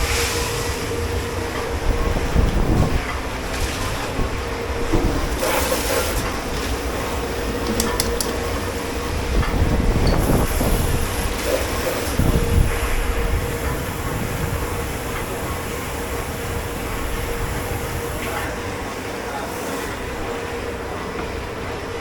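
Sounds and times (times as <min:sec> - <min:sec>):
kitchen machinery humming: 0:04.0 - 0:18.0.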